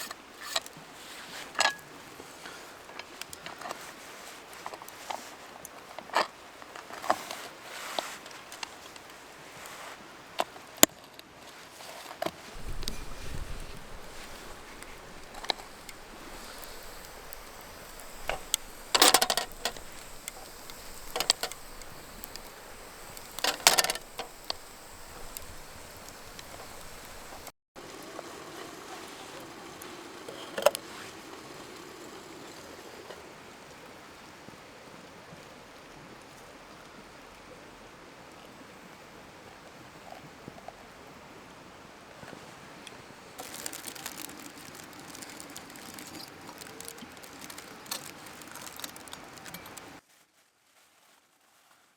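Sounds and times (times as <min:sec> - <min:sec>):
objects clinking: 0:12.6 - 0:27.5, 0:43.4 - 0:50.0.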